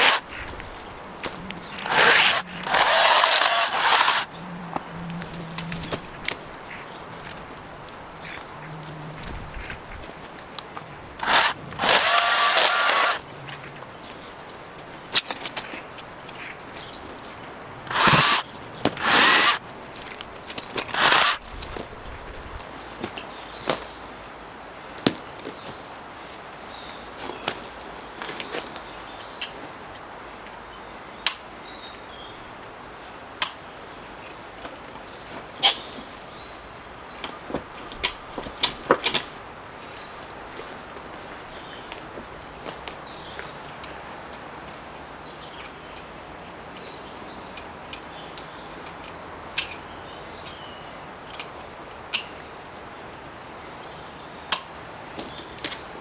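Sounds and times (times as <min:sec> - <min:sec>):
twigs snapping: 0:00.0 - 0:21.9, 0:23.0 - 0:24.0
branches cracking and rustling: 0:00.0 - 0:29.8.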